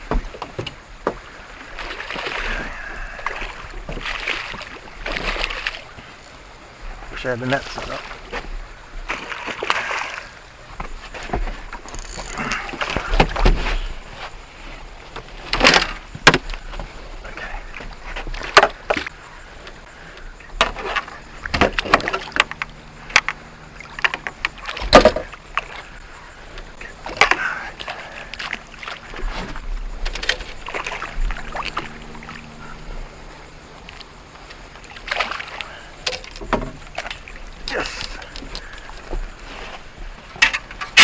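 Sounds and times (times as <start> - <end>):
knocks against boat hull: 0.0 - 1.3, 36.2 - 37.1
water splashing: 0.0 - 41.0.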